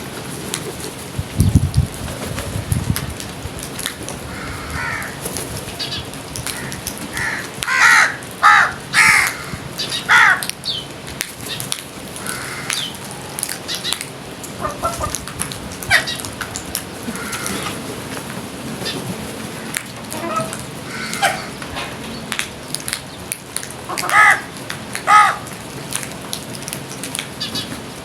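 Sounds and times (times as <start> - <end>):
crows cawing: 4.2 - 5.2, 6.5 - 10.5, 12.2 - 13.3, 17.0 - 17.8, 20.1 - 21.6, 23.9 - 25.6.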